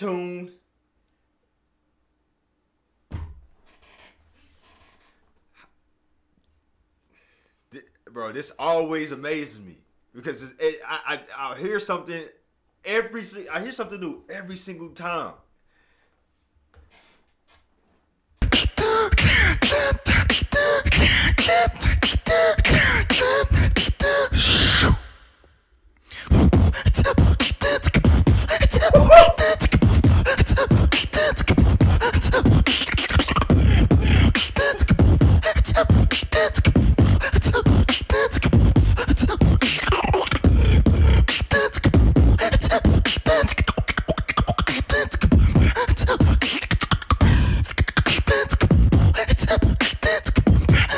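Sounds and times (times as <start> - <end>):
person beatboxing: 18.4 - 25.0, 26.2 - 50.9.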